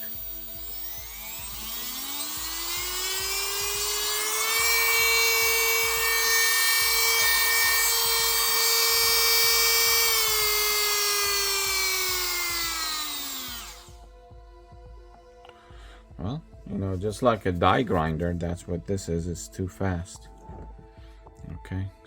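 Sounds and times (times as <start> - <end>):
rotary tool motor whining: 0.0 - 14.0.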